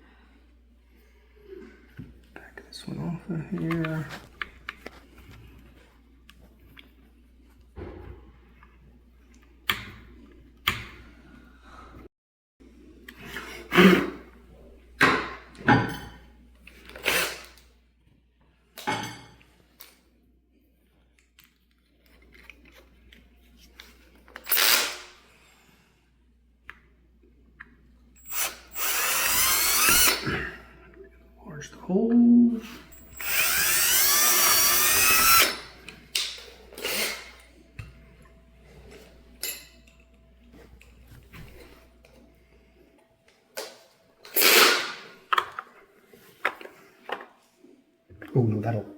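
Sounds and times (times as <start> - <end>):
electric drill whining: 28.2 - 30.3, 32.8 - 35.8.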